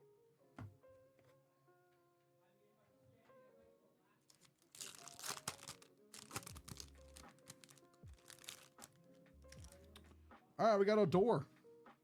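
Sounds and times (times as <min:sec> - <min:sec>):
faint background music: 0:00.0 - 0:12.0
wrapper tearing and crinkling: 0:04.3 - 0:09.9.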